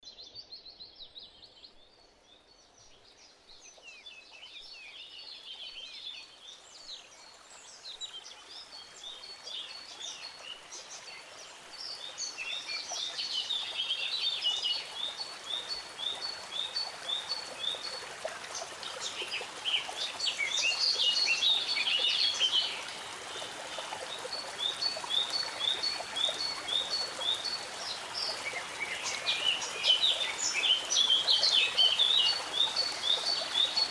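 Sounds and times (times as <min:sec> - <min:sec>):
songbirds singing: 0:00.0 - 0:33.9
stream rushing: 0:09.5 - 0:33.9.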